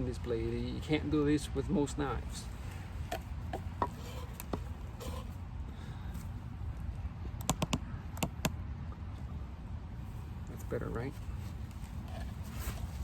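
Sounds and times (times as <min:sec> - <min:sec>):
knife spine scraping wood: 0:03.5 - 0:05.4.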